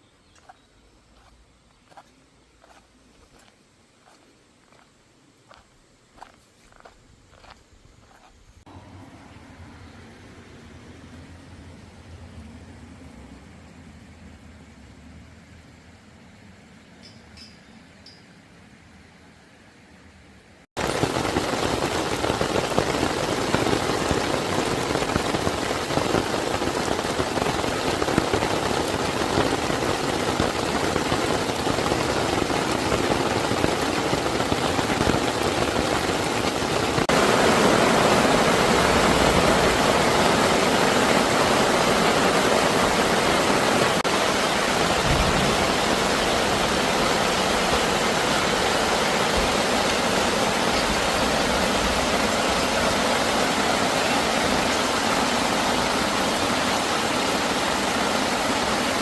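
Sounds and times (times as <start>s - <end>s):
stream rushing over rocks: 20.8s - 59.0s.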